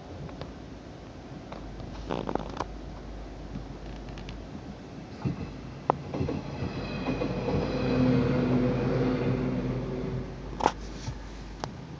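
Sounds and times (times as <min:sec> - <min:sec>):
electric train motor hum: 0:05.3 - 0:10.6.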